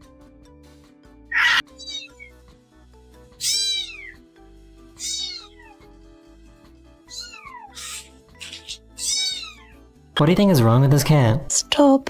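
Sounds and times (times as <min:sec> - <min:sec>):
background music: 0:00.0 - 0:12.0
cat meowing: 0:01.4 - 0:02.3, 0:03.4 - 0:04.2, 0:05.0 - 0:05.8, 0:07.1 - 0:09.8.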